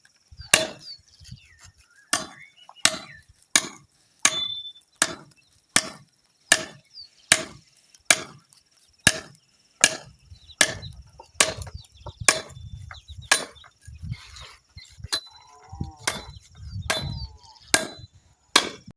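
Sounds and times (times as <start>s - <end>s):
wood being chopped: 0.5s - 0.9s, 2.1s - 8.5s, 9.1s - 12.7s, 13.3s - 13.8s, 16.0s - 18.9s.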